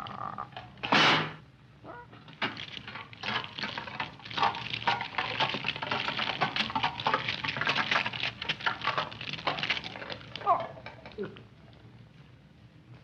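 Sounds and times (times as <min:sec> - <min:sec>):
dense crackling and clattering: 0:02.2 - 0:11.8.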